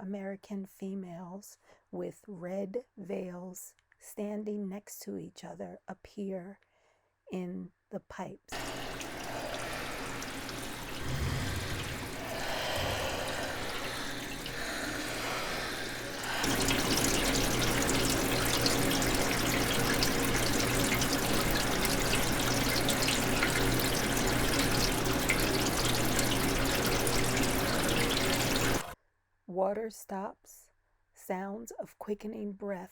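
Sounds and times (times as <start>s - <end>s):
water rushing through a pipe: 8.5s - 29.0s.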